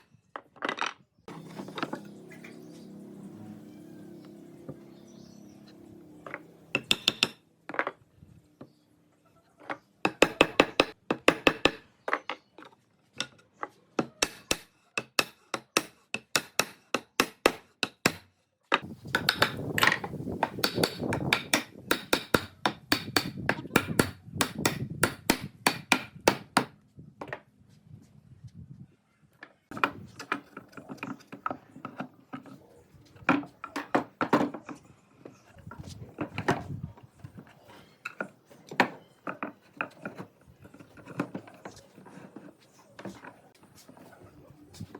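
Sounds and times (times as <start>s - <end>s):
hammer driving nails into wood: 6.8s - 7.4s, 14.2s - 18.3s, 19.2s - 26.8s.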